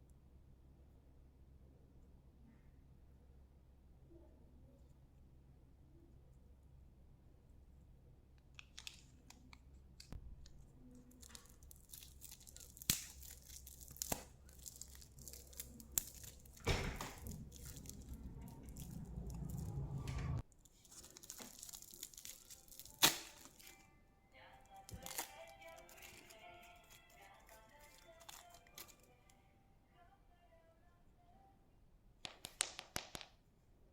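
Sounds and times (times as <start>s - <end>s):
packaging crinkling and tearing: 10.5s - 19.6s, 20.5s - 23.8s, 24.7s - 29.1s
rumbling handling noise: 15.7s - 20.4s
music: 23.4s - 31.5s.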